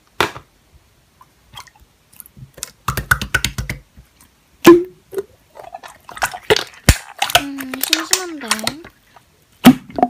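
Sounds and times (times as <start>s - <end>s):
slime being squished: 5.1s - 8.8s
loud pop: 9.6s - 10.0s.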